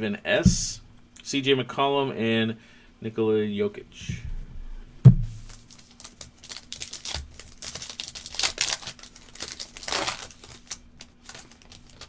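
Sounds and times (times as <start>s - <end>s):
wrapper crinkling and tearing: 5.4s - 12.0s.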